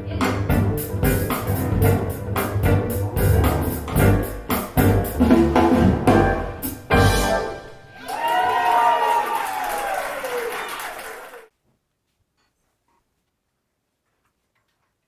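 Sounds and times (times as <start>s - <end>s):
rock band music over speakers: 0.0s - 7.9s.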